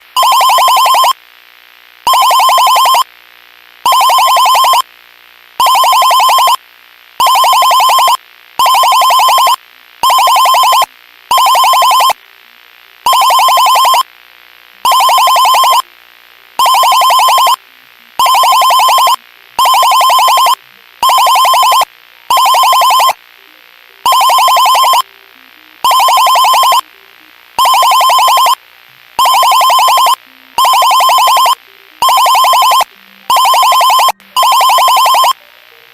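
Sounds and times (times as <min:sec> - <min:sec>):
faint steady background sound: 0:00.0 - 0:35.9
buzzy electronic alarm pulses: 0:07.2 - 0:12.2, 0:13.1 - 0:14.1, 0:16.6 - 0:23.3, 0:24.1 - 0:25.0, 0:25.7 - 0:35.9.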